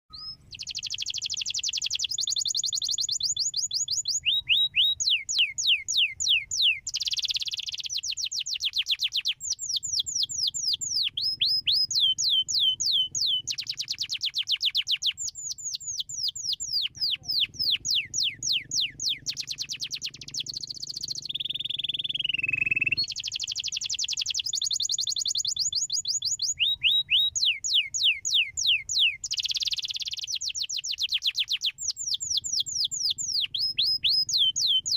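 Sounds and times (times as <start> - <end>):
canary singing trills: 0.1 - 34.9.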